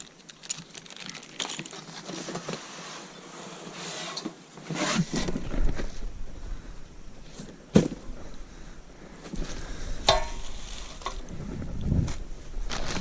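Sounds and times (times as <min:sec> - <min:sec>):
metal parts clicking: 0:00.0 - 0:02.0
packaging rustling: 0:00.0 - 0:02.6.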